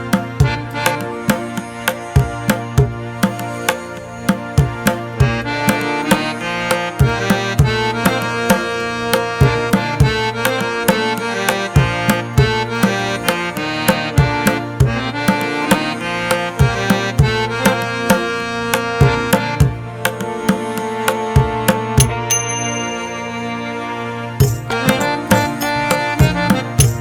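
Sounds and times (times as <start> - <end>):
hand drums beating: 0.0 - 22.5, 24.4 - 27.0
melody: 21.0 - 27.0.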